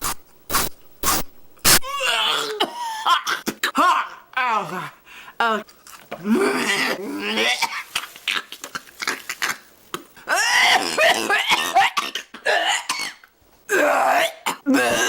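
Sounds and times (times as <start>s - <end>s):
woman crying out strained: 1.8s - 5.0s.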